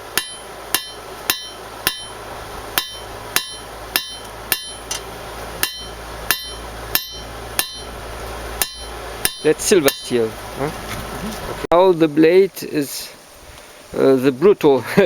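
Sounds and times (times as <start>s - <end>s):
hammer blows on hot steel: 0.0s - 10.3s
low steady hum: 0.0s - 13.9s.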